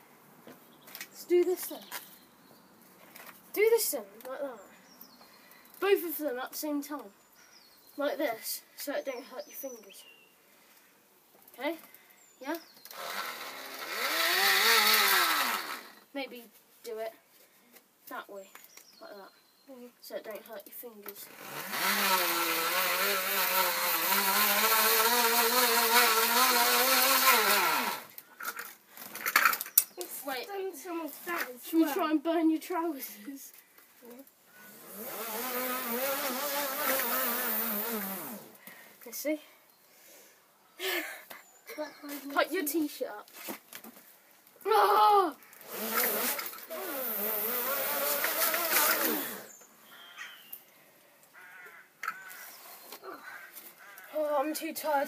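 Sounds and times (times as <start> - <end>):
person crying out: 44.7 - 45.4
electric tool humming with friction hiss: 45.7 - 49.6.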